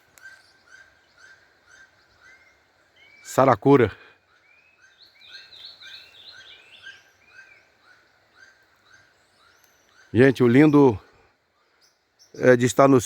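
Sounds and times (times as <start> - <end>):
bird whistled calls: 0.2 - 3.3, 4.3 - 10.8.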